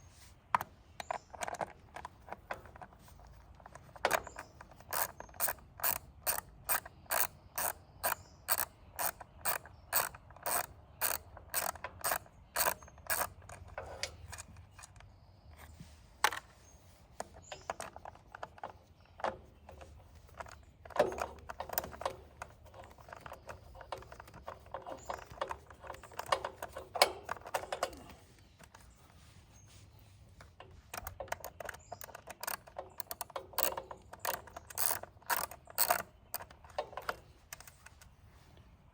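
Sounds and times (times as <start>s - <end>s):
ratchet wrench clicking: 4.0s - 14.9s, 20.3s - 28.1s, 30.9s - 37.9s.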